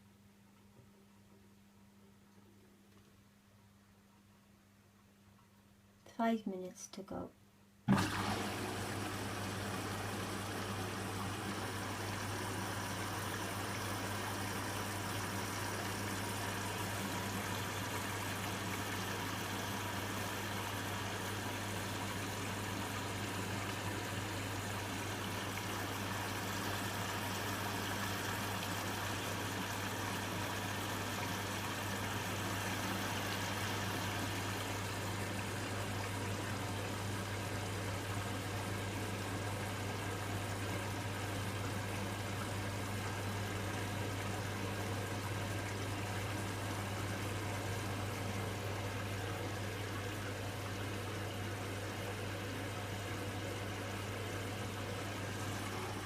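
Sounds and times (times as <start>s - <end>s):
washing machine running: 7.9s - 56.0s
water rushing in drum: 7.9s - 56.0s.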